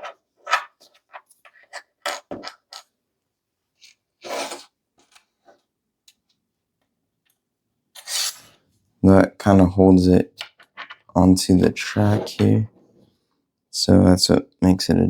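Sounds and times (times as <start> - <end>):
short scrape: 4.2 - 4.7, 8.0 - 8.6.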